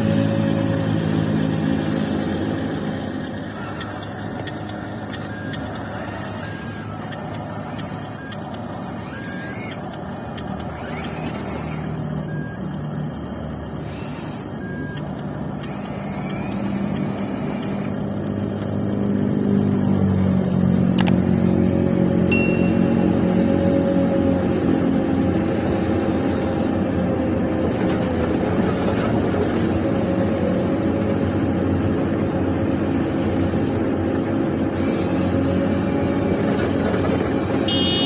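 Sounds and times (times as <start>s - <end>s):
rising whines: 0.0s - 33.8s
model machine engine drone: 0.0s - 38.0s
short beeping tones: 5.1s - 7.0s, 14.6s - 15.1s, 22.3s - 23.5s.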